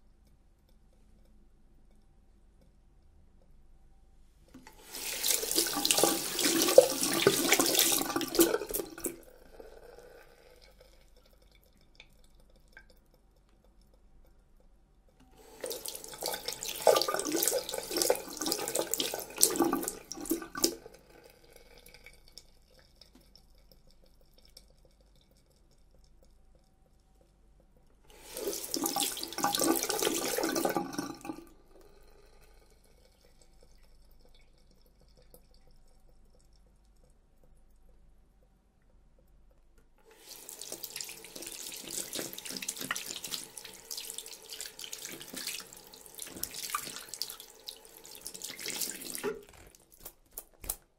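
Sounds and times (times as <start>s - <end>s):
water dripping: 4.5s - 50.9s
water splashing from tap: 4.6s - 9.3s, 15.4s - 24.6s, 28.1s - 32.0s, 40.1s - 50.8s.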